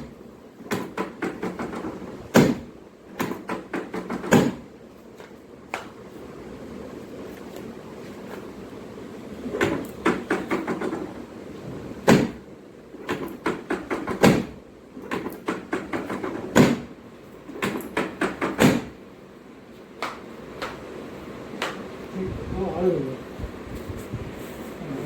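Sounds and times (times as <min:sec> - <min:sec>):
knocks and thumps on body: 0:00.7 - 0:04.6, 0:12.0 - 0:12.4, 0:13.1 - 0:16.9, 0:17.6 - 0:18.9.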